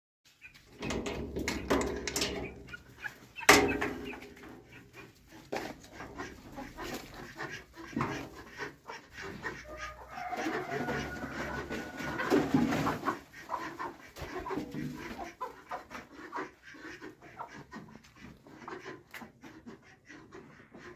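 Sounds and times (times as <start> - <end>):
chickens clucking: 0.3 - 20.9
knocks and clicks: 0.7 - 2.8, 3.4 - 4.6.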